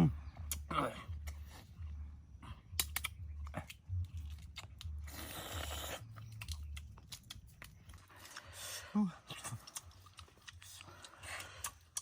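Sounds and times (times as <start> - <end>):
person crunching food: 2.6 - 8.6, 9.4 - 12.0.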